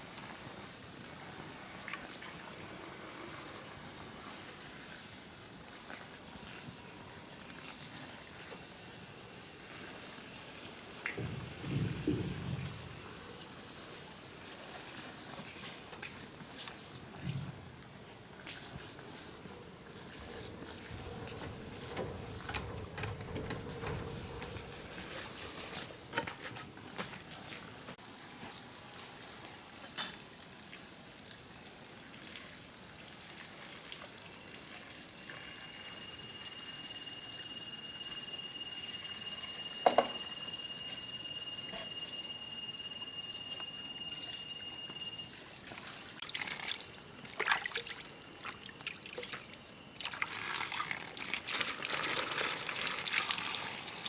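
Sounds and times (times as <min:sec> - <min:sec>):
steady high tone: 0:35.4 - 0:46.0
water trickling: 0:43.3 - 0:54.0.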